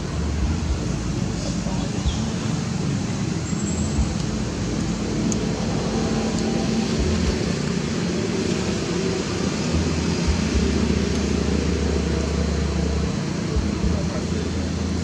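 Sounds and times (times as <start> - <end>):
road traffic rushing: 0.0 - 15.0
low hum: 3.7 - 15.0.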